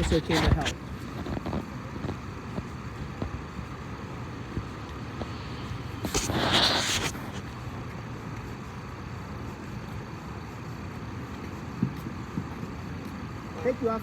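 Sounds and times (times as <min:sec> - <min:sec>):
street traffic noise: 0:00.0 - 0:14.0
loud hiss: 0:04.4 - 0:07.5.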